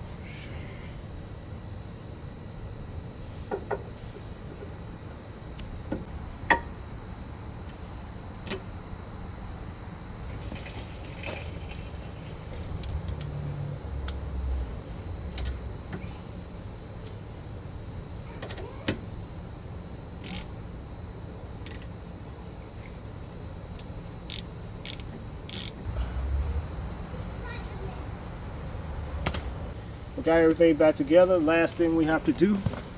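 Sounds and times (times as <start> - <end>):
ratchet clicking: 20.2 - 20.6, 21.6 - 22.0, 23.7 - 25.9.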